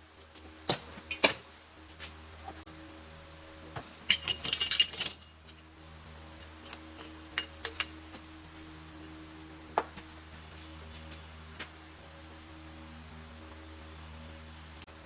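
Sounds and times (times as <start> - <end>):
metal tools clinking: 4.1 - 8.1.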